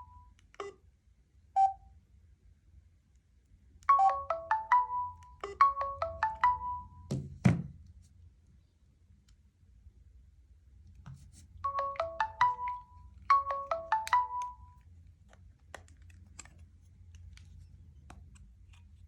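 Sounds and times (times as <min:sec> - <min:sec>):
phone ringtone melody: 0:00.0 - 0:00.2, 0:03.9 - 0:07.1, 0:11.6 - 0:14.8.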